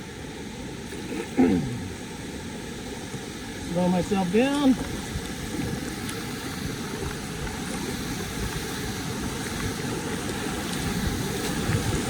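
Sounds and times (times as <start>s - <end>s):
whitewater rushing: 0.0s - 12.0s.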